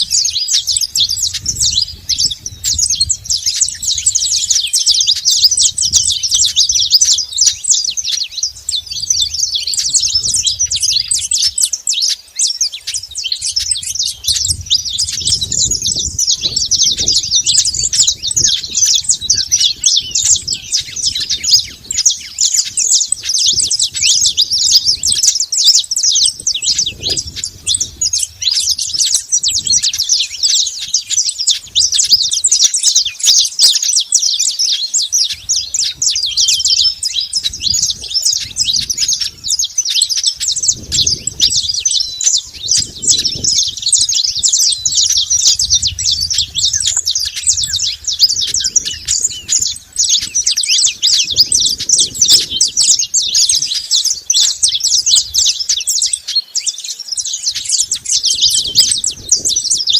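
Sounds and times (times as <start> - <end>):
finch chirping and singing: 0.0 - 59.9.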